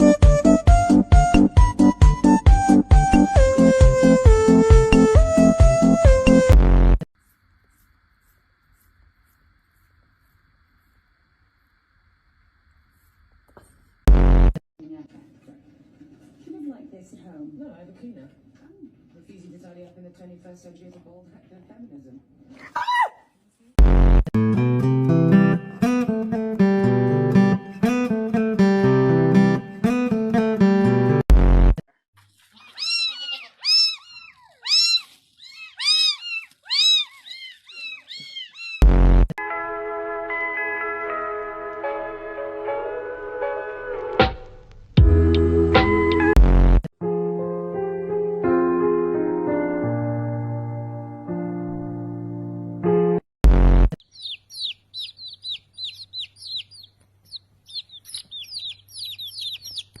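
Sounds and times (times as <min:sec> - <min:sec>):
small birds chirping: 0:32.4 - 0:38.9, 0:54.0 - 1:00.0
cat meowing: 0:32.5 - 0:38.9.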